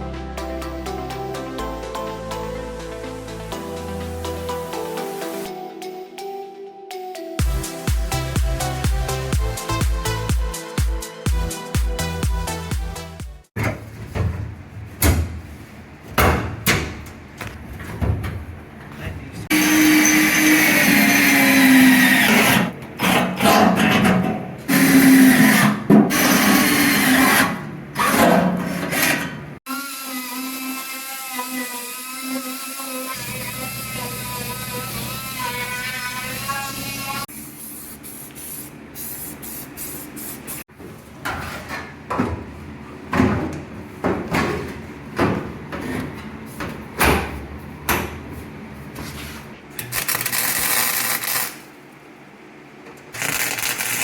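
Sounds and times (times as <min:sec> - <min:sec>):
power tool whine: 0:19.5 - 0:22.6, 0:29.7 - 0:37.3.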